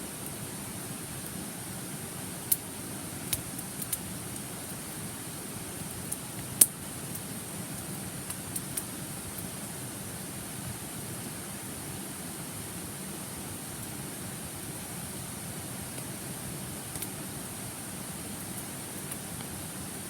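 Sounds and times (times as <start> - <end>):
campfire wood crackling and popping: 2.4 - 9.6, 16.8 - 17.4, 18.1 - 19.7.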